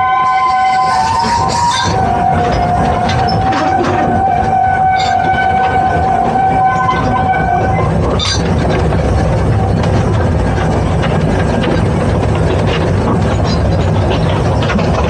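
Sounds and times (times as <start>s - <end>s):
steam locomotive whistle: 0.0s - 7.9s
train rumbling on rails: 0.0s - 15.0s.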